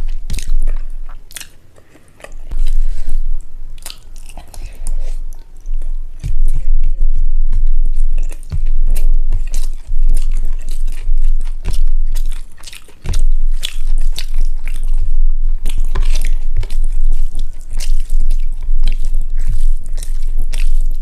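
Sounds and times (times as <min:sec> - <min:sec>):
person chewing food: 0:00.0 - 0:21.0
wet mouth clicks and smacks: 0:15.6 - 0:21.0.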